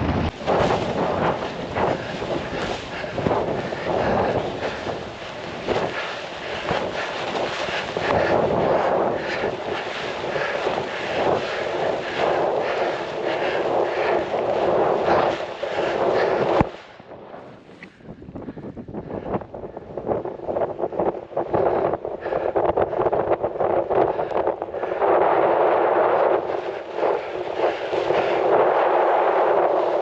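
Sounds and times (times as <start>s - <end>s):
wind rushing over microphone: 0.0s - 30.0s
snow hissing under skis: 25.1s - 30.0s.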